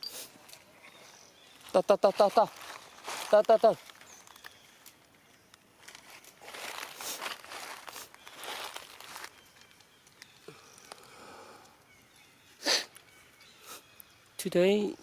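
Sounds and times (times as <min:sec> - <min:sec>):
dry rustling and crinkling: 0:00.3 - 0:11.1.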